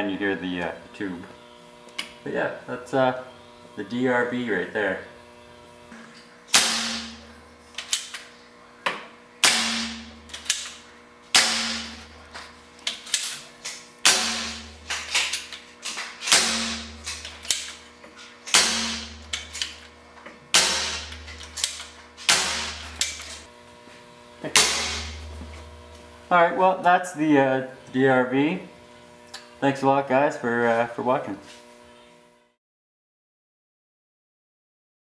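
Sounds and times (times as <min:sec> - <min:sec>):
paintball gun shot cracks: 0:09.4 - 0:10.8, 0:11.4 - 0:12.0, 0:20.6 - 0:23.2.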